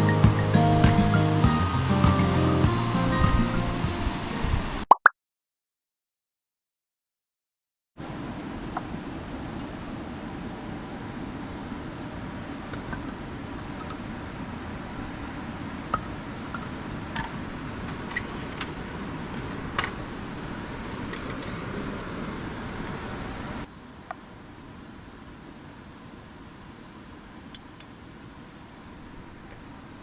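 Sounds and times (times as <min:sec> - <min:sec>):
river rushing: 0:00.0 - 0:04.8, 0:08.0 - 0:23.7.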